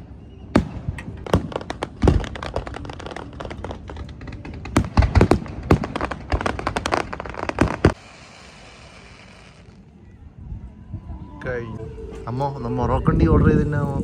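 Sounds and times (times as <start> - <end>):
fireworks bangs and crackles: 0.4 - 9.9
heavy firework booms: 0.6 - 9.3.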